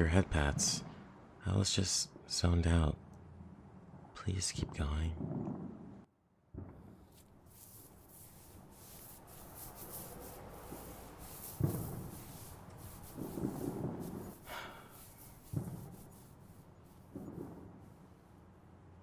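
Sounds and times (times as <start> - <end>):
hair stroking close to microphone: 7.1 - 17.6.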